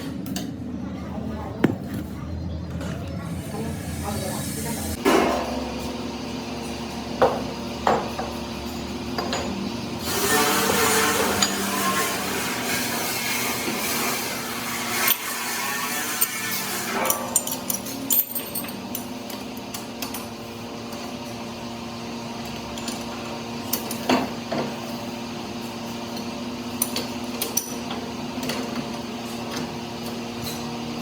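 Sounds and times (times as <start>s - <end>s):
metal tools clinking: 17.0s - 19.4s.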